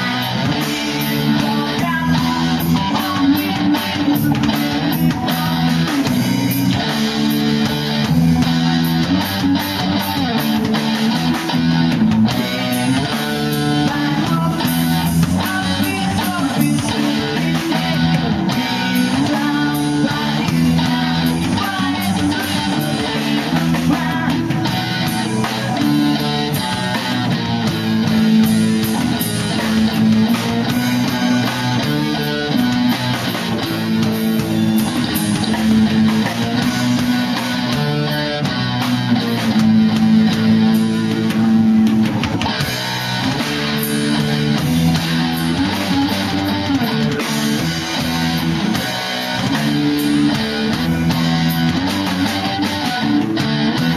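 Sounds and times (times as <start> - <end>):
drum kit beat: 0.0 - 53.9
rock music with guitar: 0.0 - 53.9.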